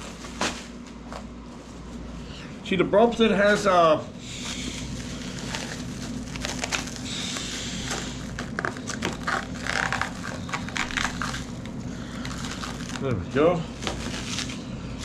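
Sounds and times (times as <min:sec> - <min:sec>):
steady low hum: 0:00.0 - 0:15.0
plastic wrap crinkling and tearing: 0:04.6 - 0:13.1, 0:13.7 - 0:15.0.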